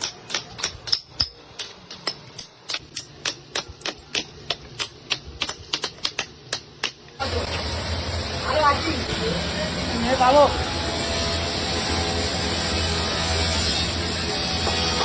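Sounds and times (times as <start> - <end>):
hand tool tapping shell: 0.0 - 7.1.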